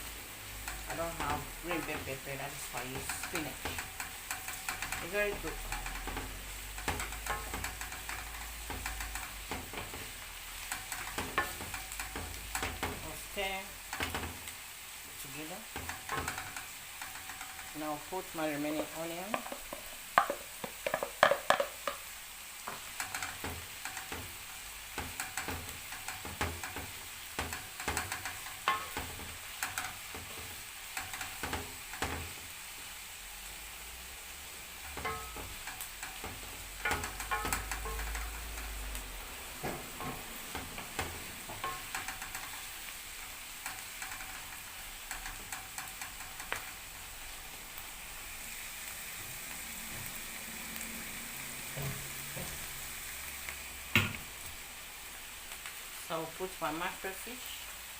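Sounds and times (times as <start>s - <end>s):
vegetables sizzling in a pan: 0.0s - 57.9s
spoon scraping against pan: 0.5s - 14.8s, 15.6s - 17.8s, 18.4s - 32.6s, 34.7s - 46.8s.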